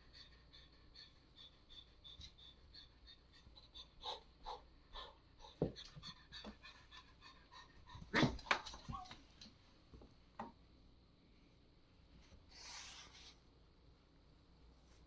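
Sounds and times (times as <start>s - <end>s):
pet panting: 0.0s - 8.2s.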